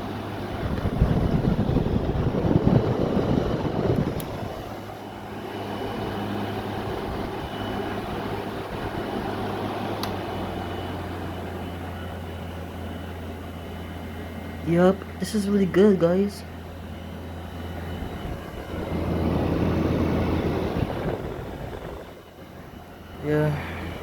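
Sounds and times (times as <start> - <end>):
air conditioner hum and whine: 0.0 - 24.0
fan air rushing: 0.0 - 24.0.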